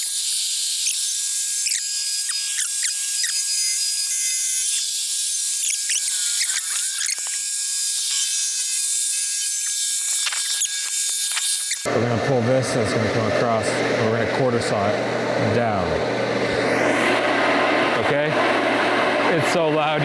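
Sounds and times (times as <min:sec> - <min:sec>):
gliding squeaks: 0:00.0 - 0:11.9.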